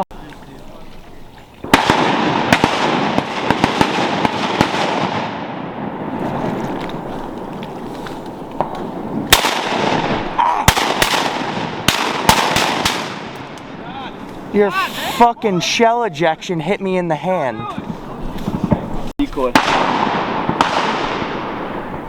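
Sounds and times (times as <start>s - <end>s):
shotguns firing in volleys: 1.6s - 6.2s, 8.6s - 13.8s, 19.4s - 22.0s.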